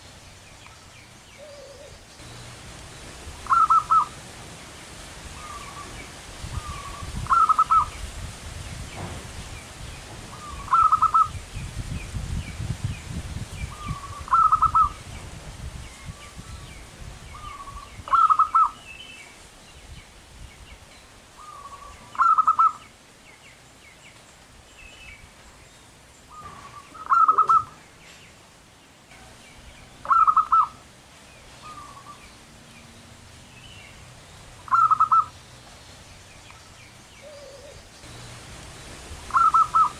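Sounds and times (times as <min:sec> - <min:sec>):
dove cooing: 0:01.4 - 0:02.0, 0:03.4 - 0:04.2, 0:05.4 - 0:06.0, 0:06.6 - 0:07.9, 0:10.3 - 0:11.3, 0:13.7 - 0:15.0, 0:17.4 - 0:18.8, 0:21.4 - 0:22.8, 0:26.3 - 0:27.8, 0:30.0 - 0:30.8, 0:34.7 - 0:35.3, 0:37.2 - 0:37.9, 0:39.3 - 0:39.9.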